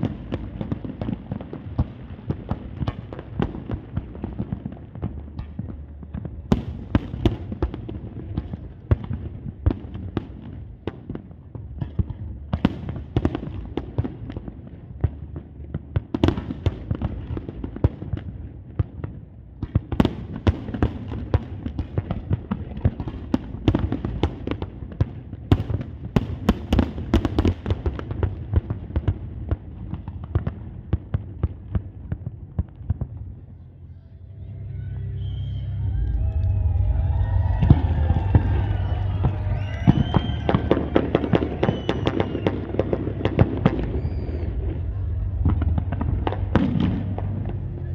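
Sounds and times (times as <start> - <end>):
fireworks bangs and crackles: 0.0 - 33.8, 36.1 - 47.9
low rumble: 32.0 - 47.9.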